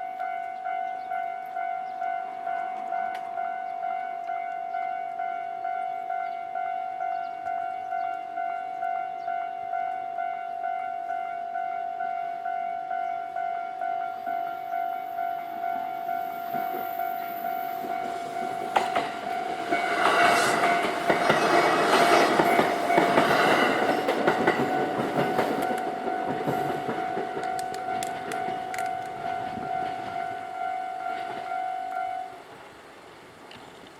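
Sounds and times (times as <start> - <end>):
level-crossing warning bell: 0.0 - 32.5
train wheels clattering over rails: 16.4 - 30.5.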